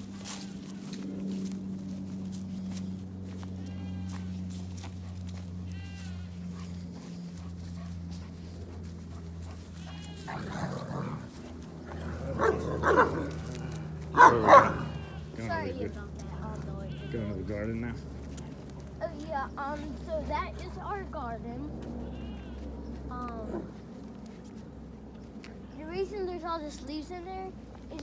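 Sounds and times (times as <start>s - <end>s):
steady low hum: 0.0s - 28.0s
livestock bleating: 0.1s - 0.9s, 3.3s - 4.6s, 5.6s - 6.7s, 9.7s - 11.2s, 11.9s - 17.6s, 22.0s - 22.7s.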